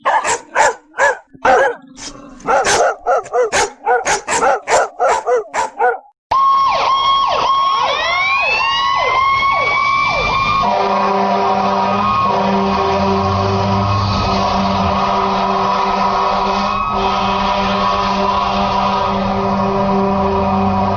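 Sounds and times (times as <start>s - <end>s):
dogs barking: 0.0s - 6.1s
fire engine siren: 2.5s - 20.9s.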